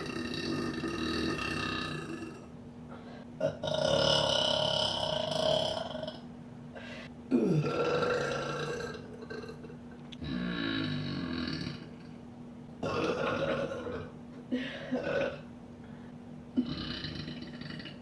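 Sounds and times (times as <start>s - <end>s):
woman burping: 7.3s - 11.8s, 12.8s - 15.4s, 16.6s - 18.0s.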